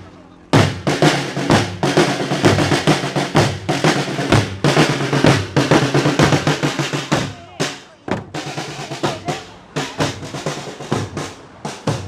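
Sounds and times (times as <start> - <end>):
marching drums beating: 0.5 - 12.0
bass drum thuds: 0.6 - 9.3.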